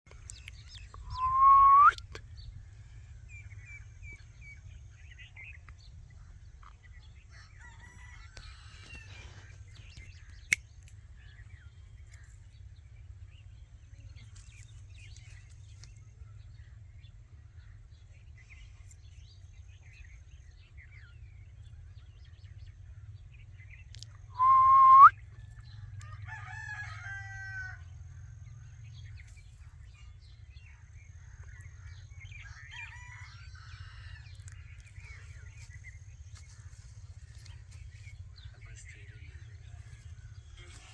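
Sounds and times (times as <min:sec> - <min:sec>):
faint parrot chirps: 0:01.0 - 0:02.2, 0:24.3 - 0:25.1.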